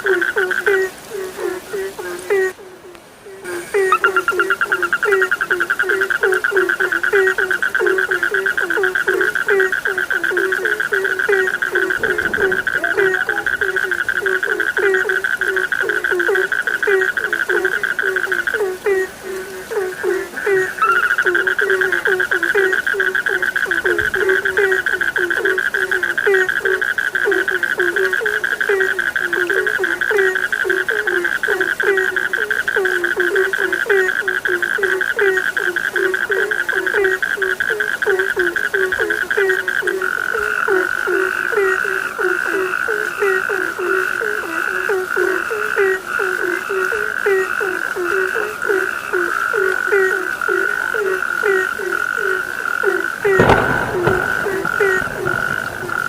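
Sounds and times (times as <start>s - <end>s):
frogs croaking: 0.0s - 56.0s
high fast frog trill: 3.6s - 6.6s.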